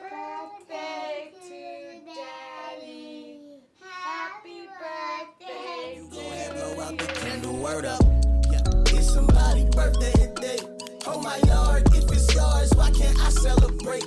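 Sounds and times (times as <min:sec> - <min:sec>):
child singing: 0:00.0 - 0:08.0
backing music with low bass: 0:06.1 - 0:14.0.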